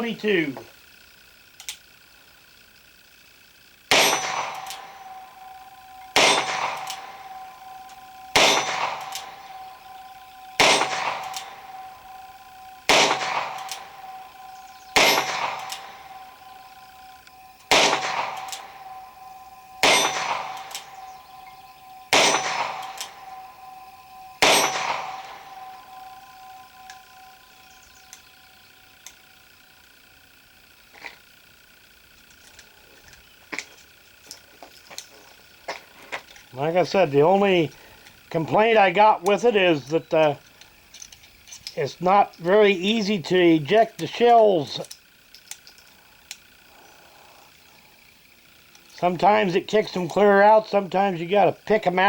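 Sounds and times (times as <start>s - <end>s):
revolver gunshots: 3.8s - 27.7s
metallic ring: 3.8s - 31.4s.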